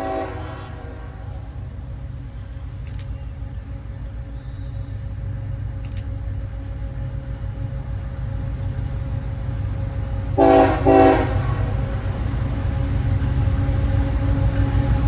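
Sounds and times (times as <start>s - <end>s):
locomotive air horn blasts: 0.0s - 1.5s, 10.4s - 11.8s
diesel freight train rumbling: 0.0s - 15.0s.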